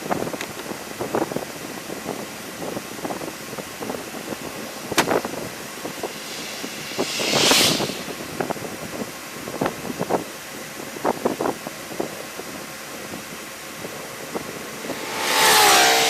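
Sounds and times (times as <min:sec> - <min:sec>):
vehicle road and wind noise: 0:00.0 - 0:16.0
whoosh: 0:04.7 - 0:08.9, 0:14.7 - 0:16.0.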